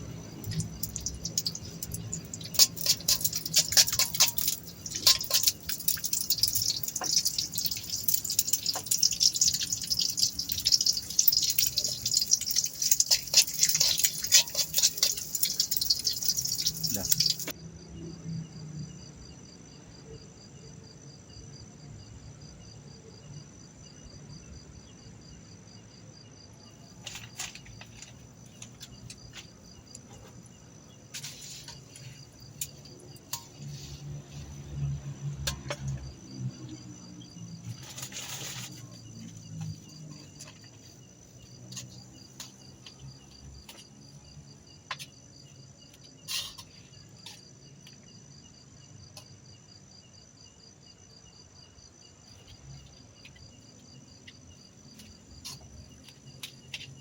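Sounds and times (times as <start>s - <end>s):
crickets chirping: 0.0s - 57.0s
sharp clicks and knocks: 0.3s - 17.6s.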